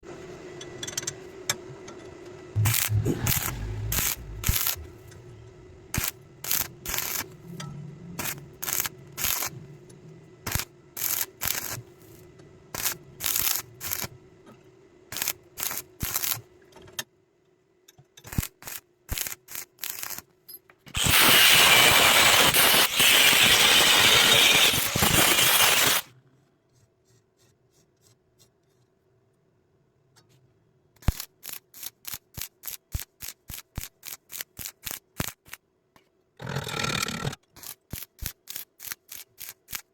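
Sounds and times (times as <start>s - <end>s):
metal scraping or tapping strokes: 2.6s - 5.3s
loud steady hiss: 21.0s - 26.1s.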